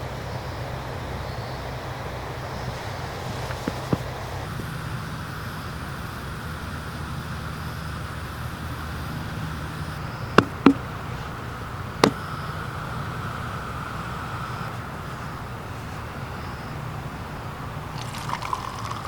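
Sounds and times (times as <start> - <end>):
sharp knocks: 10.4 - 10.8, 12.0 - 12.2.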